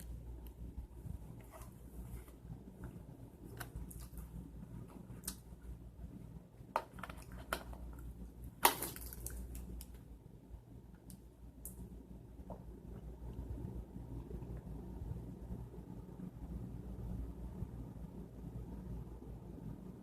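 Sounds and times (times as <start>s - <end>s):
low steady hum: 0.0s - 20.0s
small clicks and handling noises: 6.7s - 10.0s.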